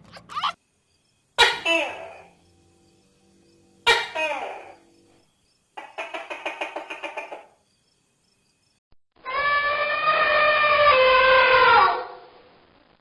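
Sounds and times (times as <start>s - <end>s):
farm animal calls: 1.4s - 2.4s, 3.8s - 4.8s.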